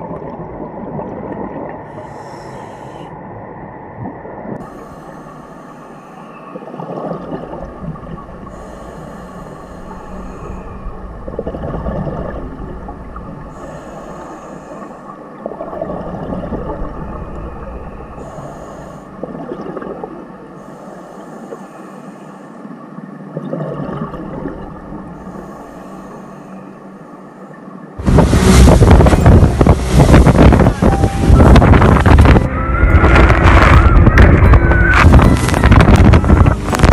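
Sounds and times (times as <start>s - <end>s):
steady underwater hum: 0.0s - 36.9s
underwater swells: 0.0s - 36.9s
loud rushing noise: 28.0s - 36.9s.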